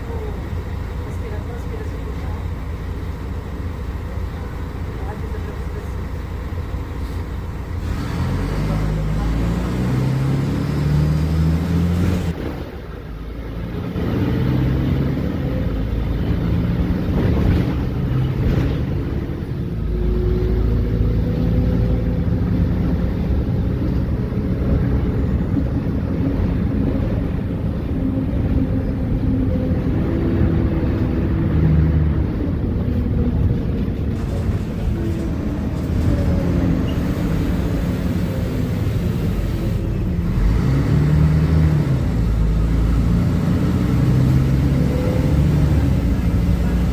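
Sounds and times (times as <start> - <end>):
bus diesel engine running: 0.0 - 46.9.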